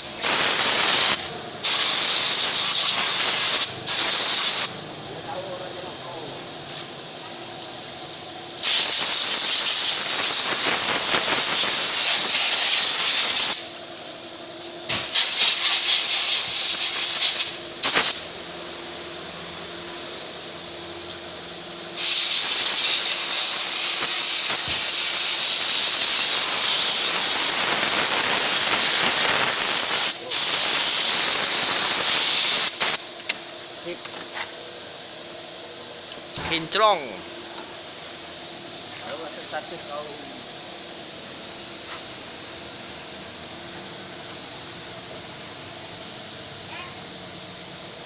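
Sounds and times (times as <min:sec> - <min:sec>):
spray nozzle hissing: 0:00.0 - 0:04.8, 0:08.6 - 0:13.7, 0:15.0 - 0:18.3, 0:22.0 - 0:33.0.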